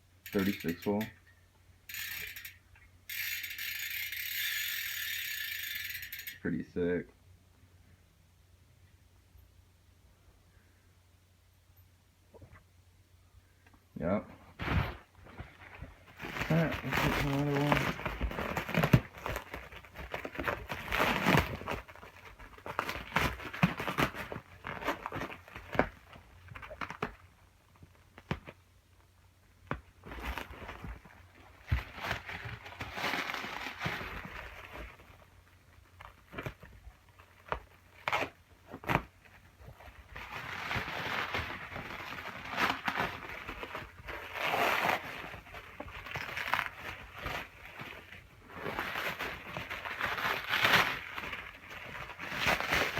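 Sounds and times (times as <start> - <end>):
packaging crinkling and tearing: 14.6 - 28.6, 29.9 - 52.9.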